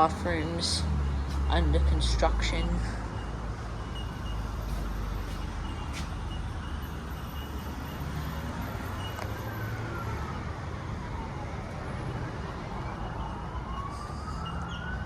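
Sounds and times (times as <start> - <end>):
road traffic rumble: 0.0 - 15.0
siren wailing: 9.2 - 15.0.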